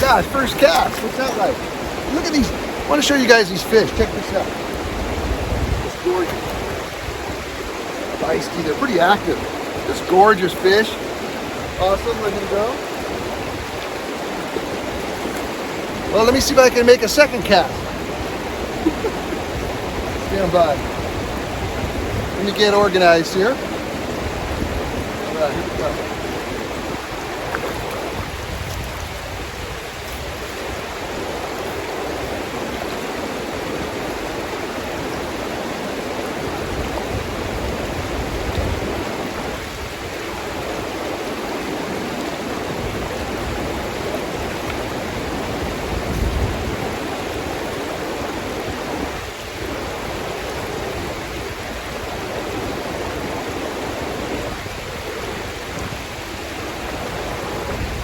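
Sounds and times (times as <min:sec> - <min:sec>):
river water rushing over rocks: 0:00.0 - 0:58.0.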